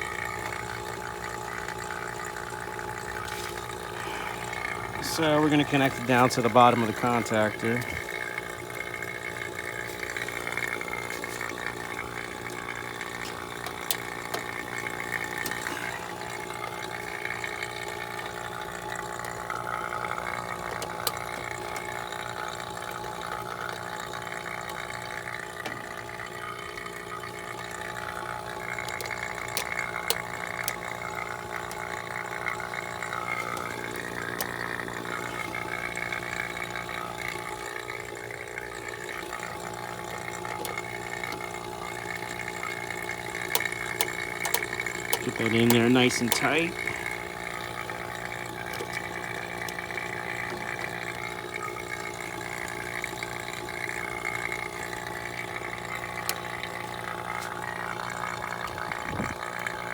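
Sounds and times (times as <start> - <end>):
vacuum pump humming and gurgling: 0.0 - 59.9
sharp clicks from wiring work: 5.2 - 37.9, 38.9 - 59.8.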